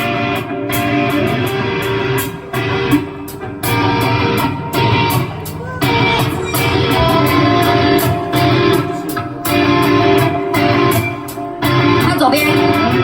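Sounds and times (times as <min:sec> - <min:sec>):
bass guitar: 0:00.0 - 0:13.0
electric guitar strumming: 0:00.0 - 0:13.0
cymbals keeping a beat: 0:03.3 - 0:13.0.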